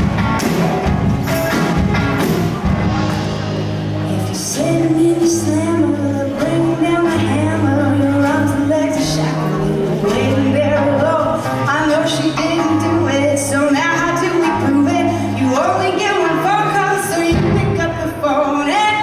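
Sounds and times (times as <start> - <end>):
live band music: 0.0 - 19.0
women singing: 4.1 - 19.0.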